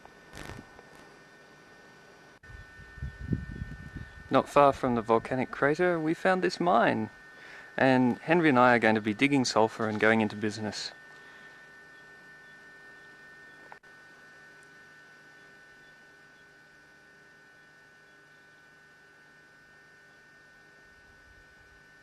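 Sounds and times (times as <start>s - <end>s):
faint electrical hum with whine: 0.0s - 22.0s.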